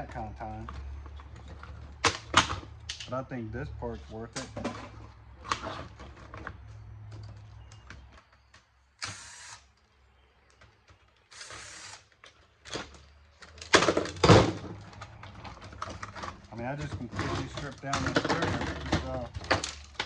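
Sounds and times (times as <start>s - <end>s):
metal and plastic parts clattering: 12.3s - 20.0s.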